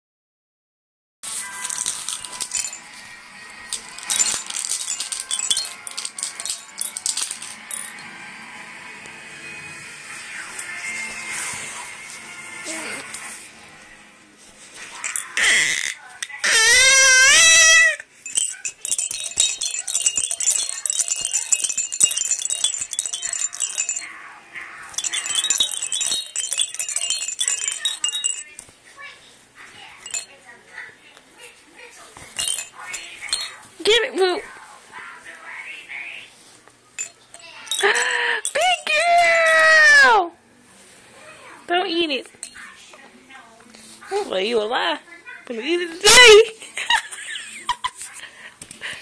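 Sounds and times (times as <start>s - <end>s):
cowbells jangling and clanking: 1.5s - 8.2s, 18.2s - 28.7s, 30.0s - 30.4s, 32.3s - 34.0s, 37.0s - 39.8s.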